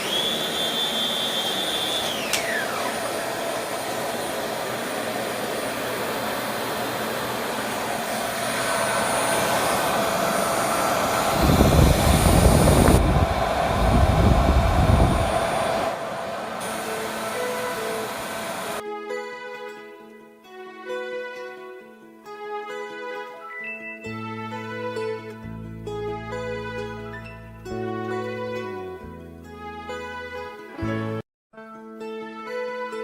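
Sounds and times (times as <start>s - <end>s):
vacuum cleaner running: 0.0s - 18.8s
whine dropping in pitch: 7.5s - 18.8s
heavy low rumble: 8.5s - 16.6s.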